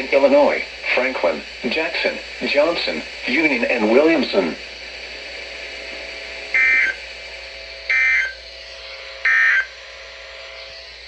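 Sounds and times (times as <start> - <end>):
warbling digital data tones: 7.9 - 11.0.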